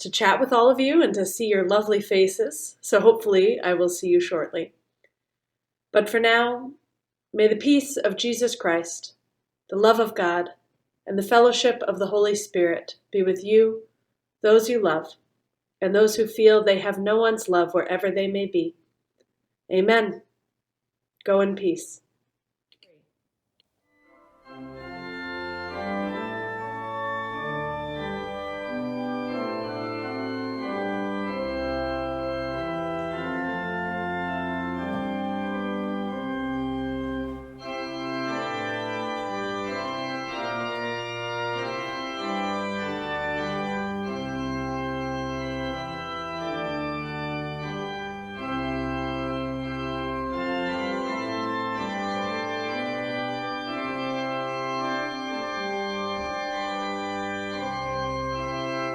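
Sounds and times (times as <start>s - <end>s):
organ playing slow chords: 24.0s - 58.9s.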